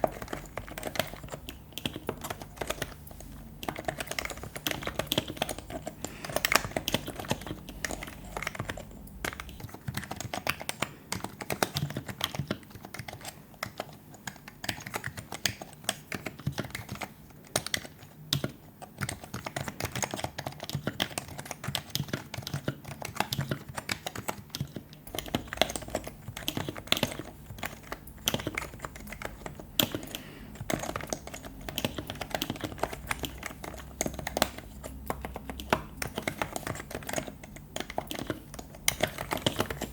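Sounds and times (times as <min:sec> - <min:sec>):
keyboard typing: 0:00.0 - 0:39.9.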